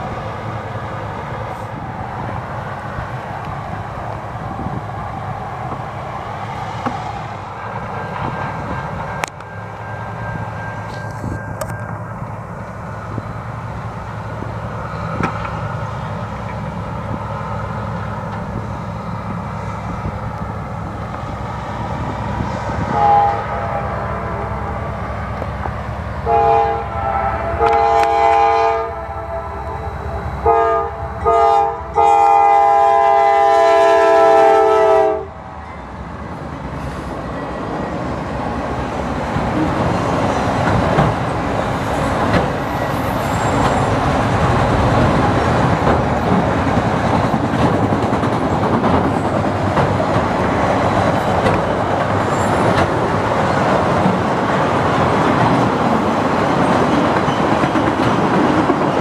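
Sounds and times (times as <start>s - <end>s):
train wheels rumbling on rail: 0.0s - 59.0s
train air horn blasts: 22.8s - 25.0s, 26.2s - 35.4s.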